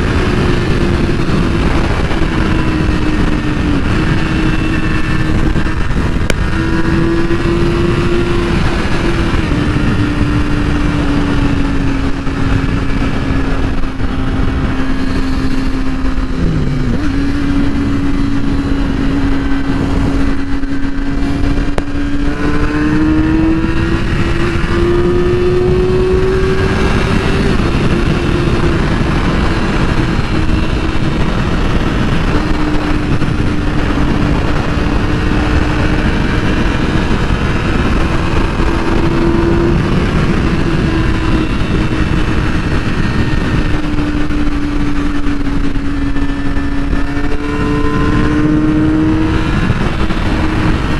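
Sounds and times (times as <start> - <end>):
motorcycle engine cruising: 0.0 - 50.9
wind and road noise: 0.0 - 50.9.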